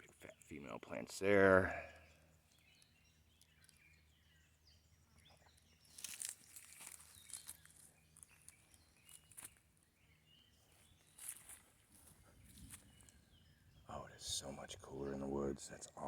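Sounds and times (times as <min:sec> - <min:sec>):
footsteps crunching dry leaves: 0:05.8 - 0:09.6, 0:10.7 - 0:13.0.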